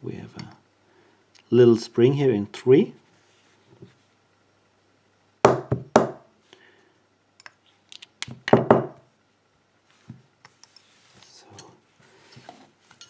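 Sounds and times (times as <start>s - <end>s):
sharp knocks on work surface: 5.4s - 6.2s.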